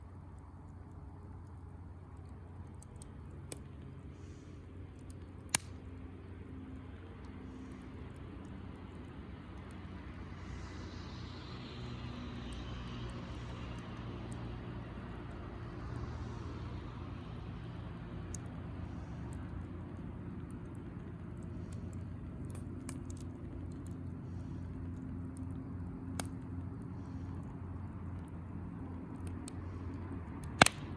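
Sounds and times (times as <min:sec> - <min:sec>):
bonfire popping: 0:02.0 - 0:09.3, 0:30.4 - 0:30.9.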